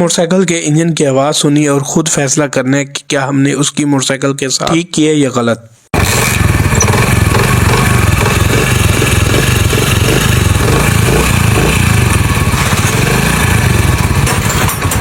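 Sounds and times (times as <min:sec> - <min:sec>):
motorcycle engine running: 0:06.0 - 0:15.0.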